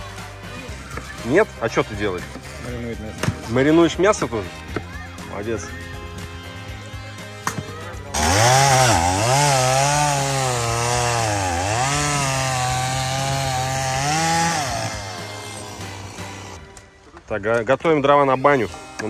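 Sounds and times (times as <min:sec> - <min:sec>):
chainsaw cutting wood: 0:08.1 - 0:16.7.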